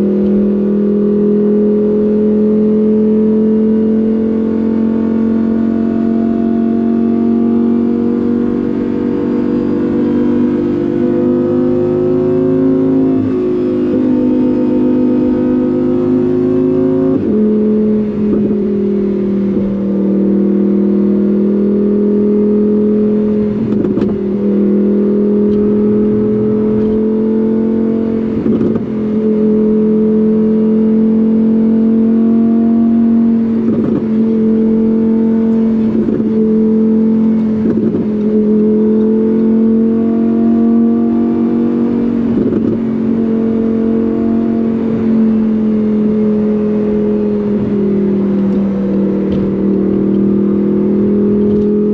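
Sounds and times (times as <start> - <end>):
car engine droning: 0.0 - 51.9.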